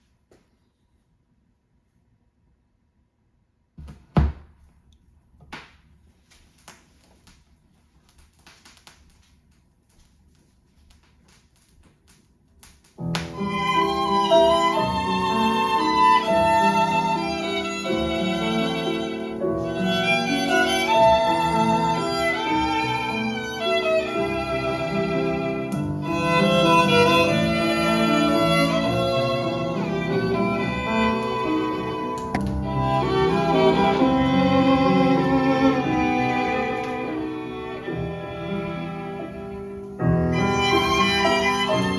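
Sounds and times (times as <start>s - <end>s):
vinyl pops and crackle: 6.4s - 13.4s
violin-led string music: 13.2s - 41.9s
faint surface hiss: 29.4s - 41.9s.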